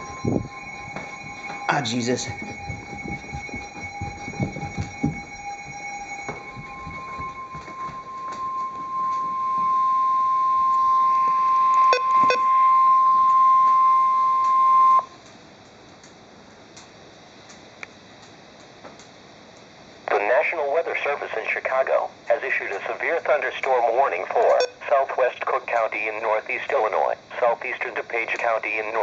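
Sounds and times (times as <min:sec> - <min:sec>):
steady alarm tone beep: 0:00.0 - 0:15.2, 0:24.5 - 0:24.9
radio hiss: 0:20.0 - 0:29.0.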